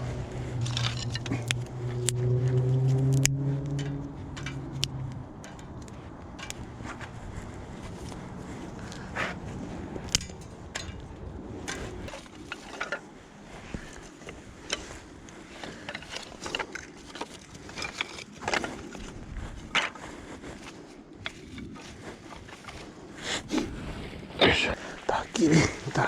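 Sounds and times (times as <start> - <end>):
sticks knocking and snapping: 0.0 - 13.1, 13.7 - 20.2.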